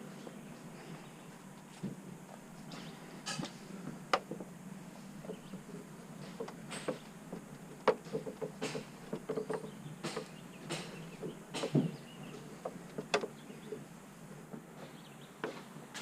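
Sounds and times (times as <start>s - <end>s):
footsteps: 0.0s - 12.9s
short knocks: 5.2s - 14.7s.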